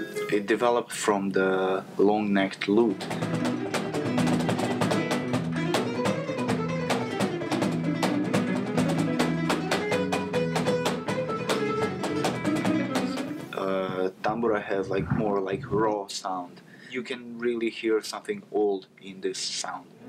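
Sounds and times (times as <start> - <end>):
plucked lute picked notes: 3.0 - 13.6.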